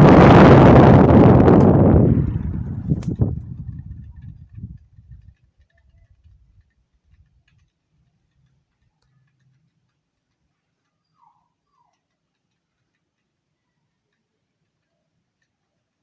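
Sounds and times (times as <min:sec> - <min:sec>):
faint ticks: 0:04.0 - 0:16.0.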